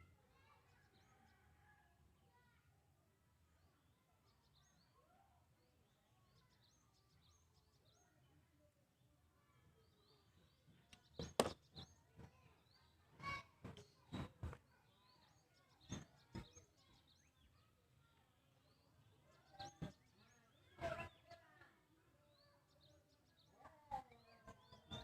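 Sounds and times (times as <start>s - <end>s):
faint bird chirping: 3.4s - 25.0s
sharp clicks and knocks: 10.9s - 11.7s.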